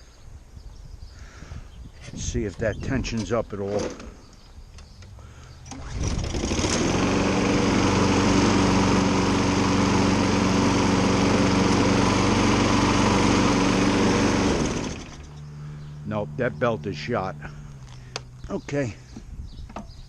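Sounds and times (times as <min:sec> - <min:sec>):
lawn mower engine running: 0:05.2 - 0:19.1.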